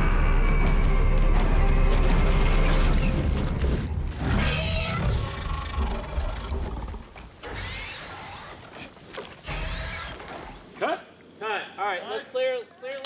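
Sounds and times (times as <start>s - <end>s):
dark tense film score: 0.0s - 8.4s.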